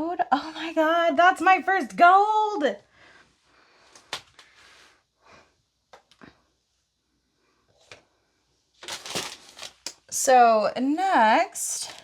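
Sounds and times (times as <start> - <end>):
packaging rustling: 8.8 - 10.1, 11.8 - 12.0.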